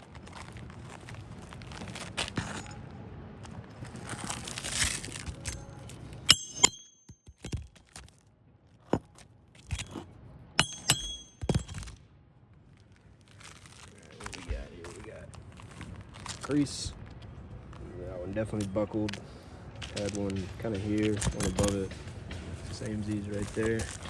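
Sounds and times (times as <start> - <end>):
metal tool scraping shingles: 1.7 - 2.8, 3.8 - 8.1, 8.9 - 11.9
sharp metallic clinks: 5.4 - 7.6, 10.6 - 11.9.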